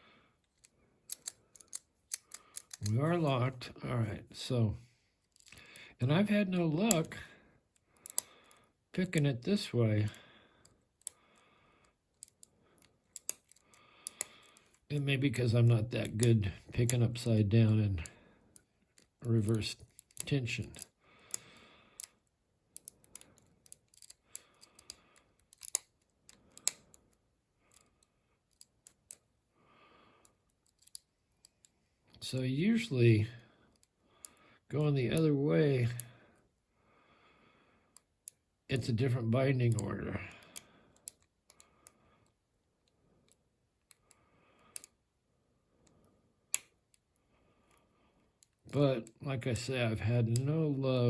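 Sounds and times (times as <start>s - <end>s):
lock pick clicking in padlock: 0.5s - 2.9s, 5.3s - 5.6s, 8.0s - 8.6s, 12.1s - 14.8s, 19.0s - 27.1s, 30.2s - 31.7s, 40.4s - 41.6s, 46.5s - 46.8s
lock pin clicks: 1.1s - 2.9s, 22.8s - 27.0s, 30.6s - 31.0s.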